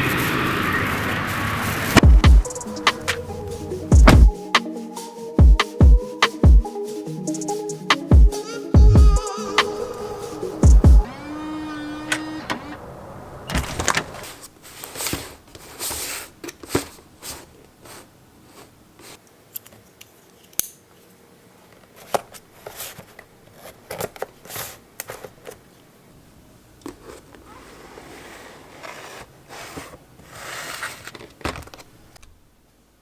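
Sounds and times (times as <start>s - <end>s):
rustling of small objects: 13.6s - 21.1s, 26.9s - 32.2s.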